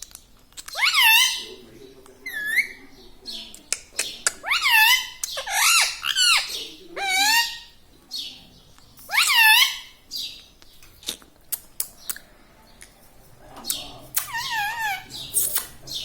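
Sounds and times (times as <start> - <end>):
parrot squawking: 0.6 - 1.6, 2.2 - 2.8, 4.0 - 8.3, 9.1 - 10.4, 14.2 - 16.0.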